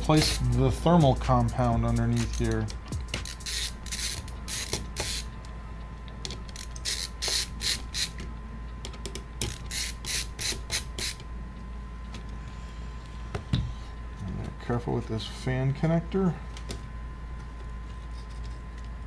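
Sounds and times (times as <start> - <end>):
hand tools rasping on metal: 0.0 - 2.6
faint steady hum: 0.0 - 19.0.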